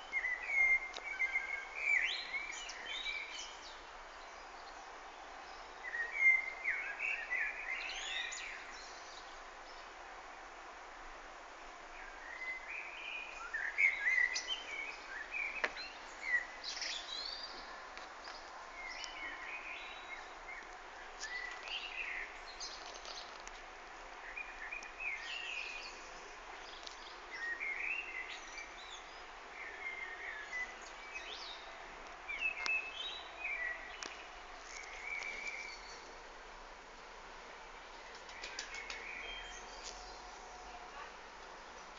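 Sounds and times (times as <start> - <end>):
steady background hiss: 0.0 - 41.9
bird chirping: 12.0 - 23.4.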